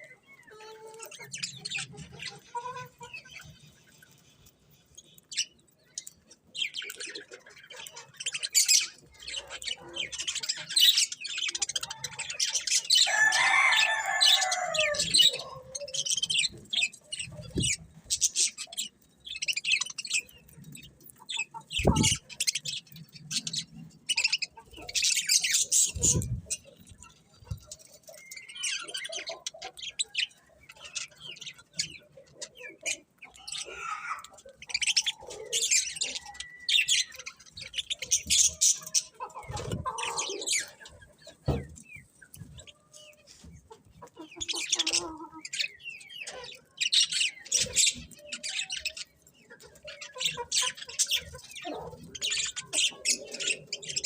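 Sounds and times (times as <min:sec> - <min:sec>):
budgerigars chirping: 0:00.0 - 0:04.2, 0:04.8 - 0:54.0.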